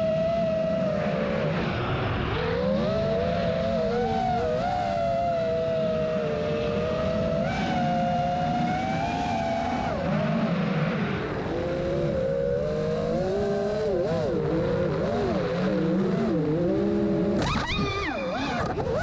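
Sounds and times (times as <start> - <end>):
quadcopter propellers whining: 11.0 - 19.0.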